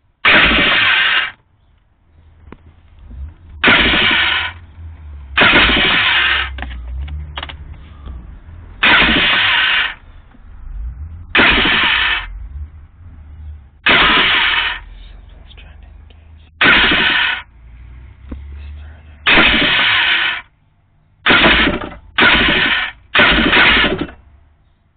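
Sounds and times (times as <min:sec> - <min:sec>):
electric starter cranking: 0:00.2 - 0:01.4, 0:03.0 - 0:04.6, 0:05.4 - 0:07.5, 0:08.8 - 0:10.0, 0:11.3 - 0:12.3, 0:13.8 - 0:14.9, 0:16.6 - 0:17.5, 0:19.3 - 0:20.5, 0:21.2 - 0:24.2.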